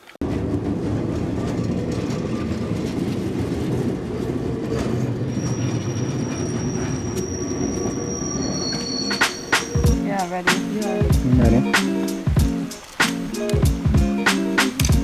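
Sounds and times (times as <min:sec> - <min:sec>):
train rumbling: 0:00.0 - 0:15.0
high wheel squeals: 0:05.2 - 0:10.4
sharp clicks: 0:12.6 - 0:15.0.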